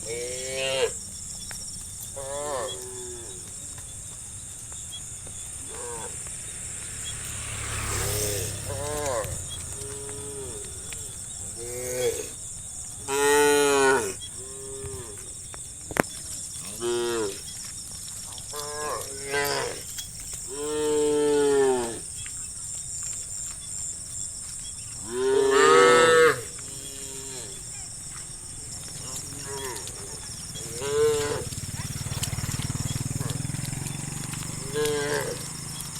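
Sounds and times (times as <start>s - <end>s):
cows mooing: 0.0s - 1.0s, 2.2s - 3.6s, 5.6s - 6.3s, 6.9s - 12.4s, 13.0s - 15.3s, 16.6s - 17.5s, 18.5s - 22.1s, 25.0s - 27.7s, 28.7s - 35.9s.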